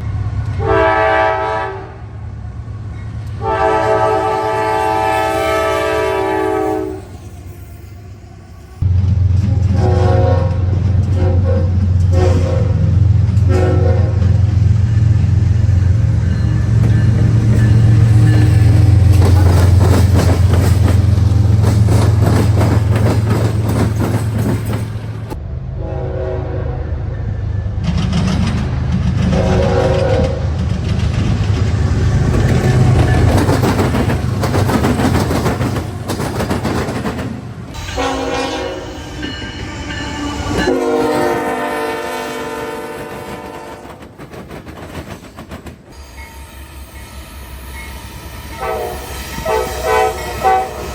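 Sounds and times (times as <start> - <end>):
train rumbling past: 0.0 - 50.9
locomotive air horn: 0.6 - 2.1, 3.4 - 7.2, 9.6 - 14.5, 25.7 - 27.3, 29.3 - 30.5, 37.8 - 44.0, 46.0 - 50.9
wheels clattering on rails: 15.1 - 25.4, 27.8 - 41.6, 43.0 - 46.0.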